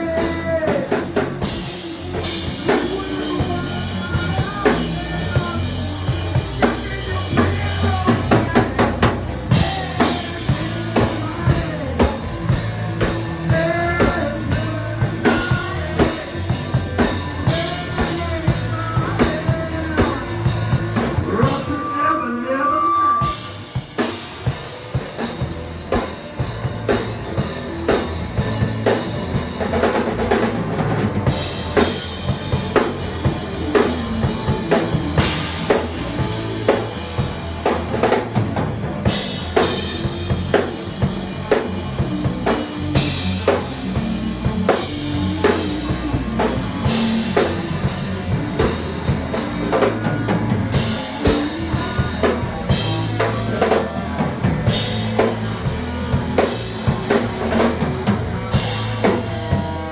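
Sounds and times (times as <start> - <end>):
drum kit beat: 0.0 - 21.8, 23.2 - 59.9
music with pitched instruments: 23.1 - 59.9.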